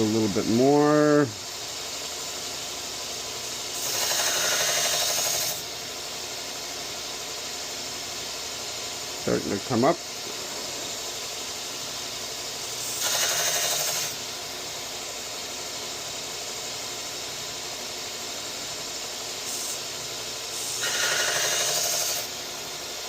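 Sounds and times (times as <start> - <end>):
blade grinding hiss on belt: 0.0 - 23.0
belt grinder motor running: 3.7 - 5.8, 12.6 - 14.3, 19.4 - 22.8.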